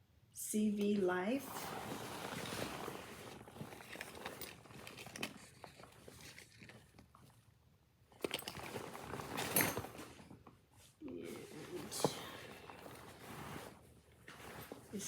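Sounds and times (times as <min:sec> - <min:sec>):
backpack fabric rustling: 0:01.4 - 0:07.3, 0:08.4 - 0:10.5, 0:11.3 - 0:15.0.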